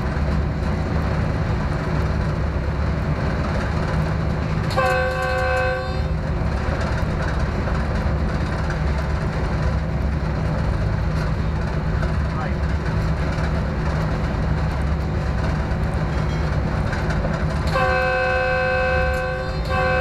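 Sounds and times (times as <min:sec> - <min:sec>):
train rumbling: 0:00.0 - 0:20.0
train horn: 0:04.7 - 0:06.2, 0:17.7 - 0:20.0.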